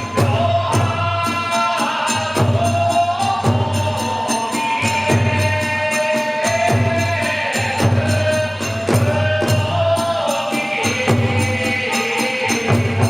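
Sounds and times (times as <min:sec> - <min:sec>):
taiko drum beating: 0:00.0 - 0:05.8, 0:06.5 - 0:10.2, 0:11.0 - 0:11.7
hand cymbals clashing: 0:00.0 - 0:13.0.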